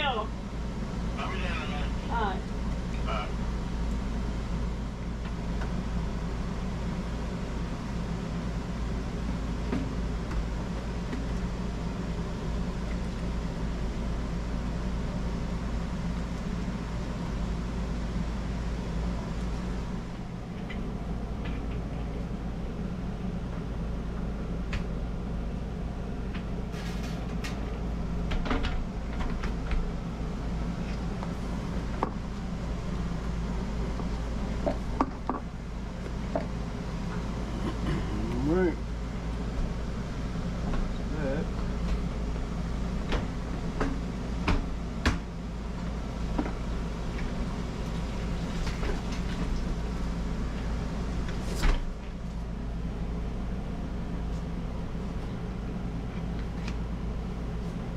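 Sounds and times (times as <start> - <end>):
low machine hum: 0.0 - 57.9.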